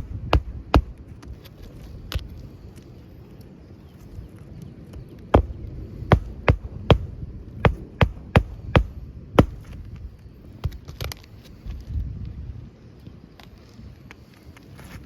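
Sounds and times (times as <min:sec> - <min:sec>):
hammer striking nails: 0:07.7 - 0:09.6.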